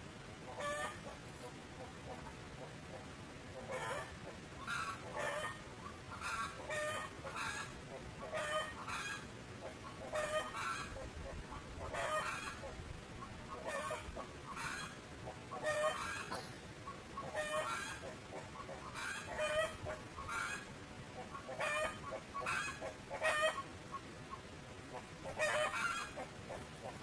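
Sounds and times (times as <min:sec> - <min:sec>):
steady background hiss: 0:00.0 - 0:27.0.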